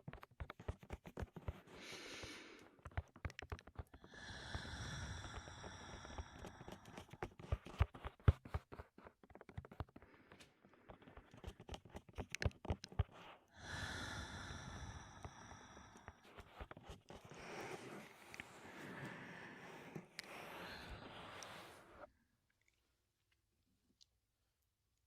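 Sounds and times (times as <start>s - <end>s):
heavy breath into microphone: 4.0s - 7.3s, 13.5s - 22.1s
fingertips tapping microphone: 5.2s - 13.4s.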